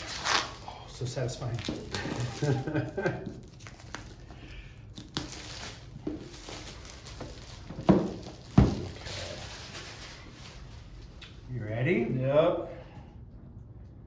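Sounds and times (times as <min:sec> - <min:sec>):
packaging rustling: 0:00.0 - 0:00.7, 0:01.4 - 0:11.2.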